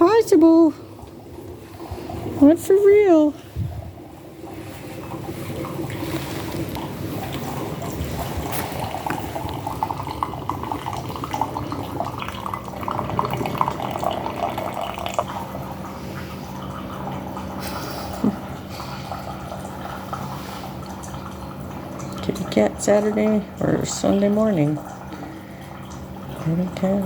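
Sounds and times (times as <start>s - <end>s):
steady low hum: 0.0s - 27.0s
cat lapping from bowl: 3.4s - 23.7s.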